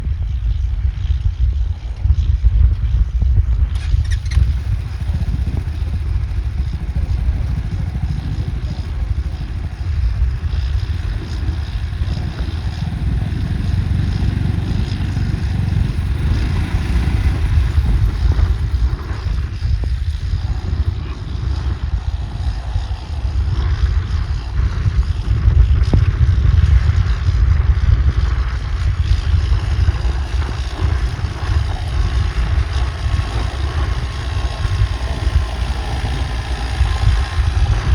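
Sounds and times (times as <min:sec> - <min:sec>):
tractor engine rumbling: 0:01.5 - 0:25.8, 0:27.5 - 0:37.9.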